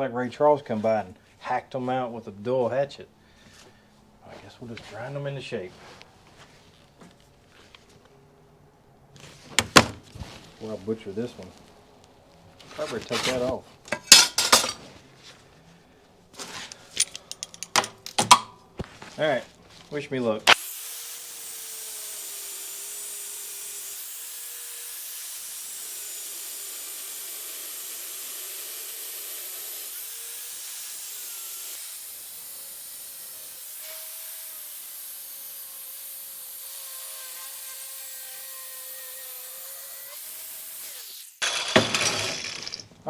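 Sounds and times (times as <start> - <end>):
angle grinder grinding metal: 12.8 - 14.8, 20.5 - 42.9.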